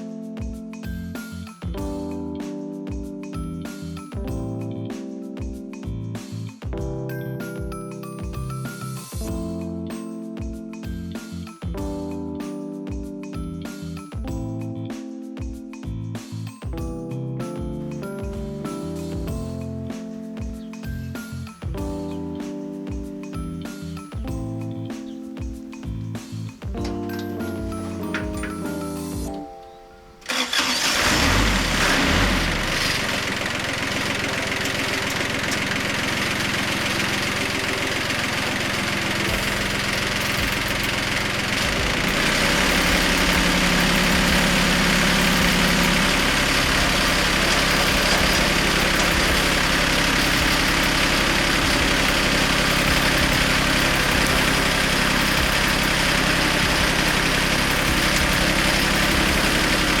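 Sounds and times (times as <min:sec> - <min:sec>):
tractor engine running: 0:18.0 - 1:00.0.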